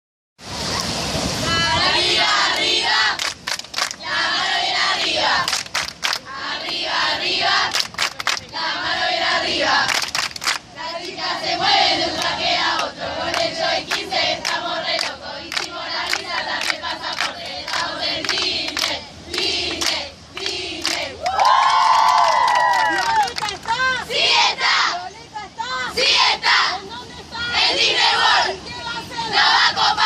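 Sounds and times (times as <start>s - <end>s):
young voices chanting and cheering: 0.6s - 3.4s, 10.6s - 30.0s.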